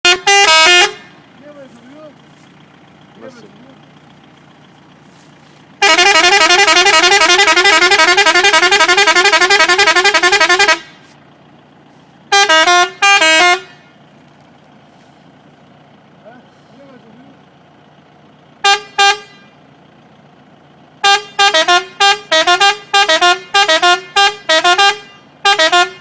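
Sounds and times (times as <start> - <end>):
electric melody horn: 0.0 - 1.2, 5.8 - 11.1, 12.3 - 14.0, 18.6 - 19.6, 21.0 - 26.0.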